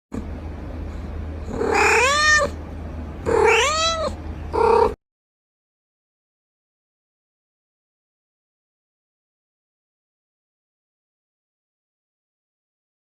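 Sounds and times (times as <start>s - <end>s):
steady low hum: 0.1s - 5.0s
cat meowing: 1.5s - 2.6s, 3.2s - 5.0s.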